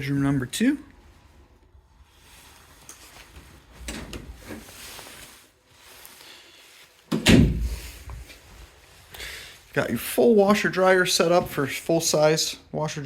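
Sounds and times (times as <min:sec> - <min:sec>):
loud door thump: 0:07.1 - 0:07.9.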